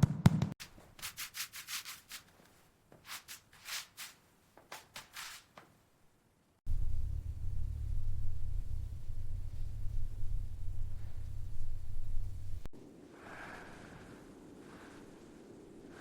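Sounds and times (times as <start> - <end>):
steady low rumble: 6.7 - 13.1.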